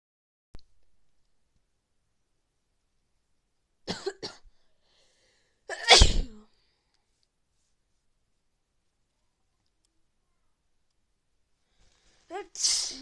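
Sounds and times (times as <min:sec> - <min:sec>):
person sneezing: 0:05.7 - 0:06.4, 0:12.5 - 0:13.0.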